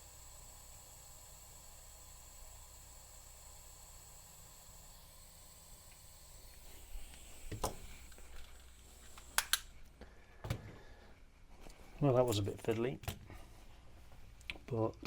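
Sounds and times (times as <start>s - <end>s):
small parts clicking and tapping: 7.0s - 9.8s.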